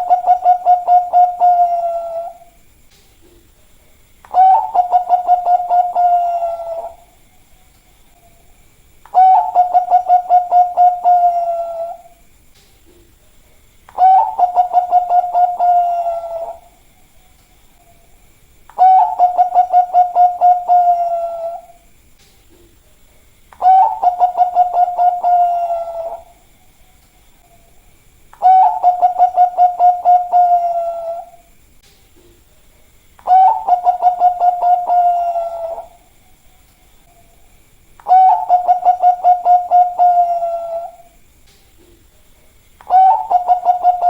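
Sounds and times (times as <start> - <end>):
dove cooing song: 0.0 - 2.6, 4.3 - 7.2, 9.1 - 12.2, 13.9 - 16.9, 18.7 - 21.9, 23.6 - 26.5, 28.4 - 31.5, 33.2 - 36.1, 38.0 - 41.2, 42.8 - 44.0.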